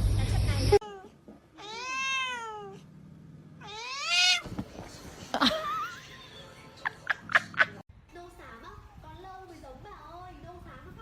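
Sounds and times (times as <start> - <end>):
cat meowing: 0.8 - 2.8, 3.6 - 4.5.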